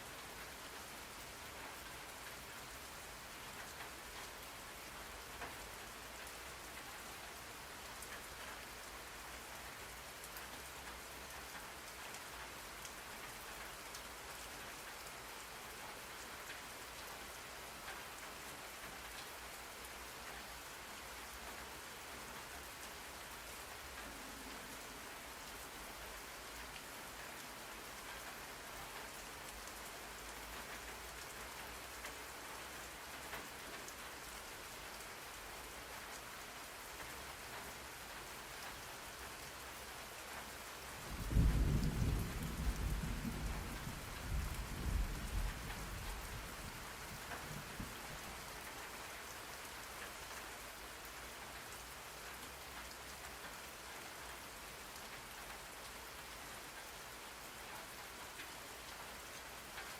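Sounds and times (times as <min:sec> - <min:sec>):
steady rain falling: 0:00.0 - 0:59.9
thunder rumbling: 0:41.1 - 0:46.5.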